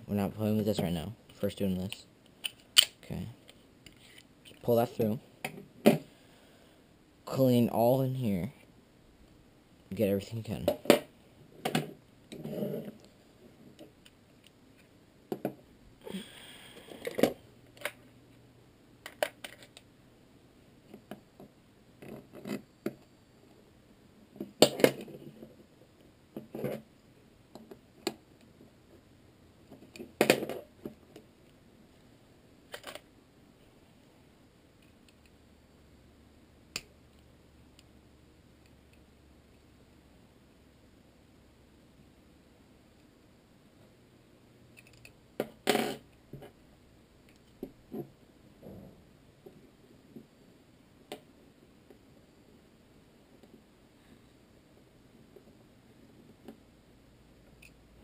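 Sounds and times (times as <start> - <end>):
gun parts clicking and scraping: 2.4 - 4.6, 32.7 - 33.1.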